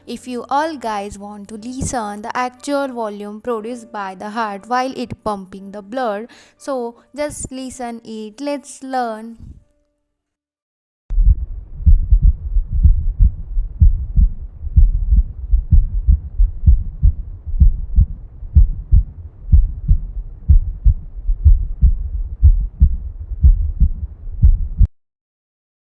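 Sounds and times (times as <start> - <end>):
heartbeat thumps: 11.1 - 24.9.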